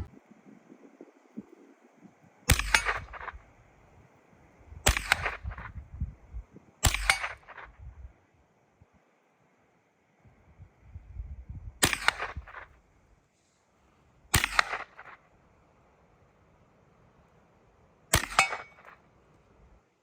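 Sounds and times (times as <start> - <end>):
gunshots with echo: 4.8 - 5.8, 11.8 - 12.7, 14.3 - 15.1, 18.1 - 18.8.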